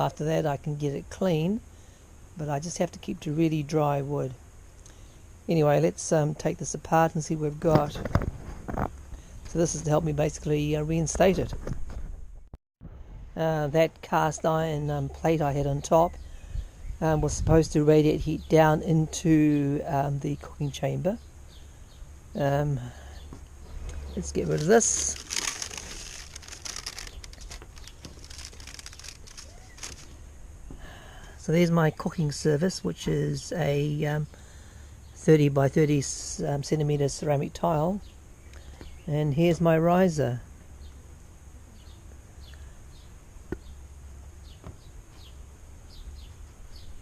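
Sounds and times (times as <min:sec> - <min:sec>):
small birds chirping: 0:14.2 - 0:35.4, 0:37.6 - 0:39.8, 0:41.7 - 0:47.0
metal parts rustling and scraping: 0:24.2 - 0:30.2.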